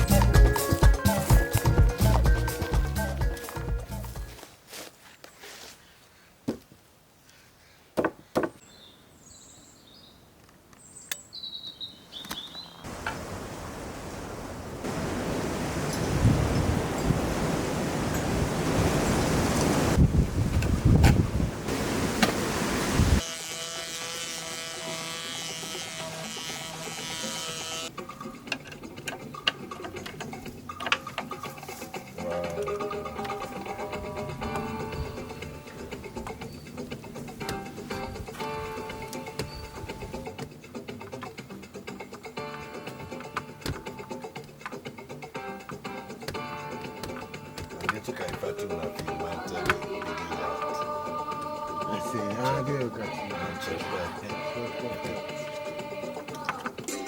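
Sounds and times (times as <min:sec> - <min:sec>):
small birds chirping: 0:07.2 - 0:12.9, 0:34.5 - 0:41.3
small electric motor whining: 0:23.2 - 0:27.9.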